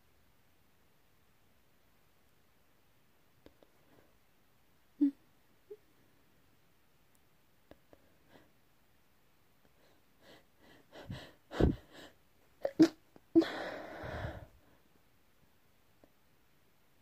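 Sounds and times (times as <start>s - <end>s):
catching breaths: 13.4s - 14.9s.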